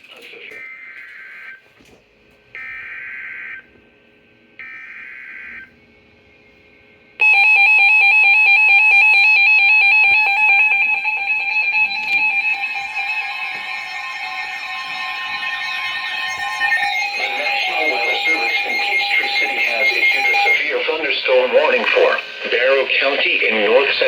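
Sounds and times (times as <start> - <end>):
two-tone alert signal: 7.2 - 22.6.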